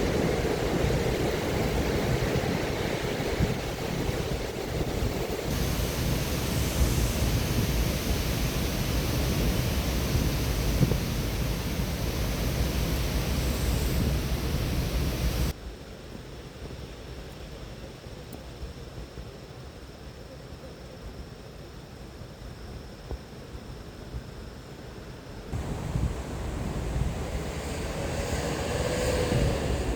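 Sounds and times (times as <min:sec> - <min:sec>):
stormy sea surf: 0:00.0 - 0:15.5, 0:25.6 - 0:29.9
wind buffeting the microphone: 0:00.0 - 0:15.5, 0:25.6 - 0:29.9.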